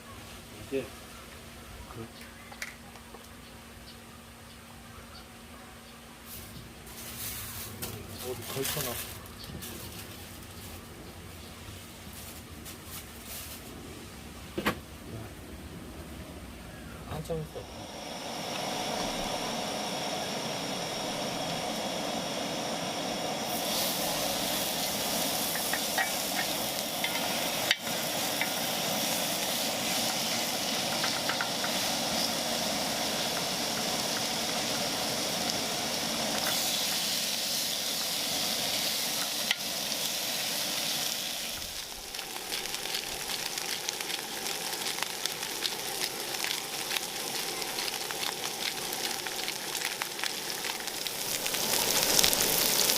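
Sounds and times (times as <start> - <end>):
food sizzling in a pan: 6.2 - 10.8, 17.3 - 52.9
oil spitting and crackling: 17.6 - 52.9.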